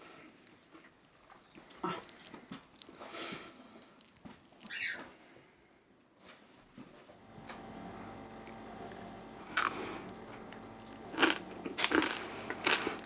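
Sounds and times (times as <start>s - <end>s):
person chewing crunchy food: 0.7s - 4.9s, 9.5s - 13.0s.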